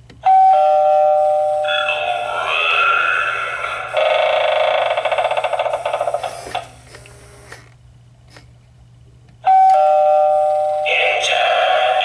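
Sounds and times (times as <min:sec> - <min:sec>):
two-note doorbell chime: 0:00.2 - 0:01.6, 0:09.4 - 0:11.0
rattling buzz: 0:02.2 - 0:07.7.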